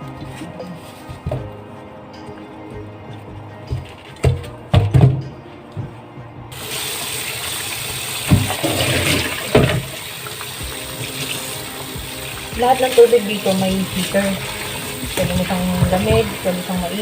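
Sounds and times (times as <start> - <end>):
knocks in kitchen: 4.2 - 5.3, 8.3 - 8.8, 9.5 - 9.9
tap water running: 6.5 - 17.0.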